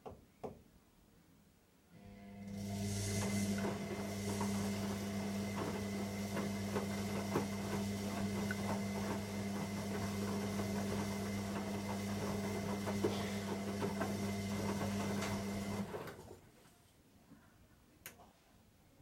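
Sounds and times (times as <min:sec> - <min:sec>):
washing machine motor hum: 0:02.0 - 0:16.4.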